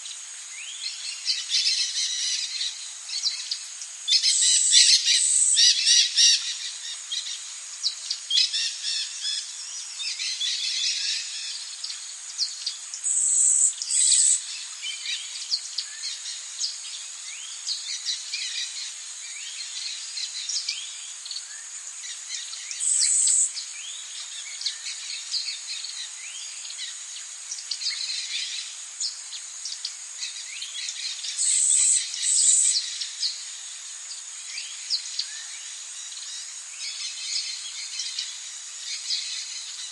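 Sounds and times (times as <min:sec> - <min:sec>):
high-pitched insect drone: 0:12.6 - 0:14.7, 0:21.2 - 0:23.6, 0:30.3 - 0:39.9.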